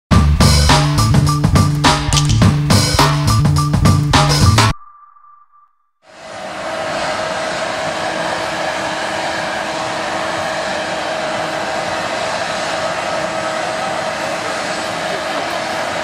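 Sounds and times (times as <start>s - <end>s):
jet engines running: 6.1s - 16.0s.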